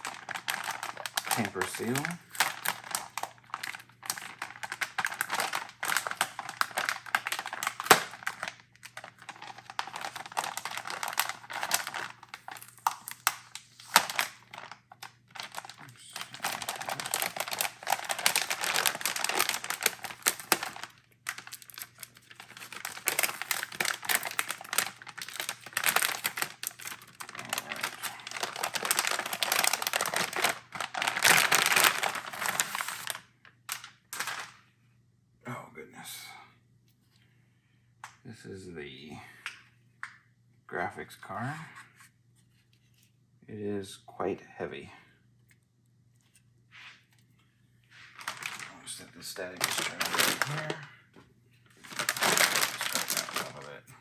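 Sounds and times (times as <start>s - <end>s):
plastic bag crinkling: 0.0s - 34.6s, 47.9s - 51.0s, 51.6s - 53.9s.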